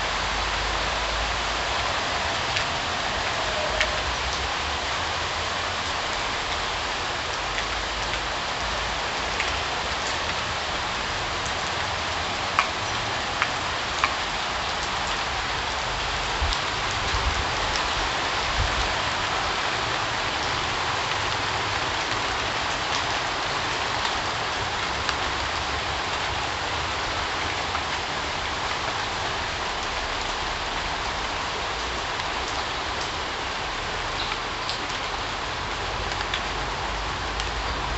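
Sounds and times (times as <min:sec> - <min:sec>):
steady rain falling: 0:00.0 - 0:37.9
sharp raindrop ticks: 0:11.4 - 0:15.8, 0:33.8 - 0:37.9.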